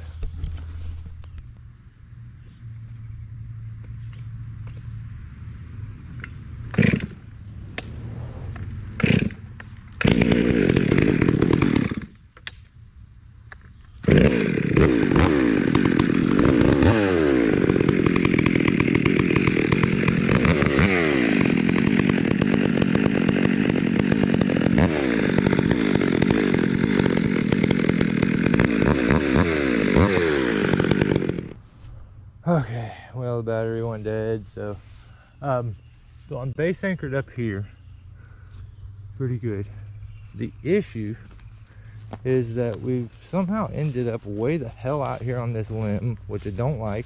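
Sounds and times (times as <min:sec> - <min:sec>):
chainsaw running: 0:06.1 - 0:12.6, 0:14.0 - 0:31.6, 0:36.4 - 0:47.0.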